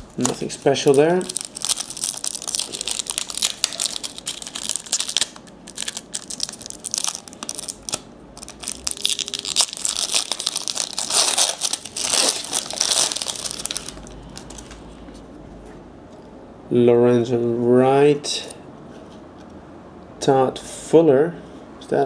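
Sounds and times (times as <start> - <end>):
card pack wrapper crinkling and tearing: 0.0 - 14.8.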